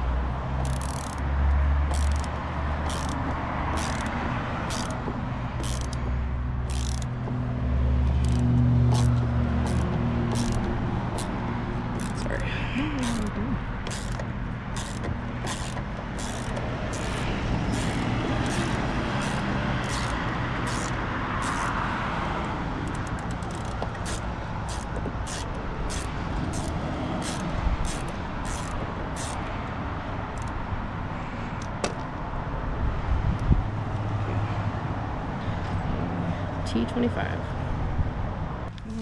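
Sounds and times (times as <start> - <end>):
ratchet clicking: 0.6 - 30.6.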